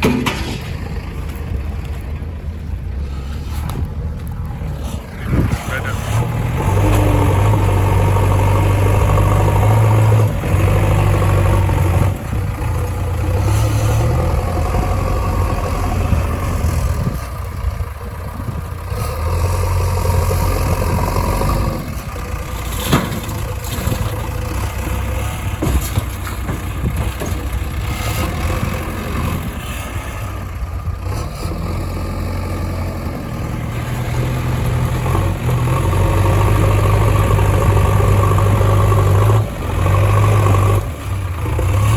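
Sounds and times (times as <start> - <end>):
metal clanks: 0.0 - 1.5, 21.9 - 28.4
diesel engines running: 0.0 - 41.9.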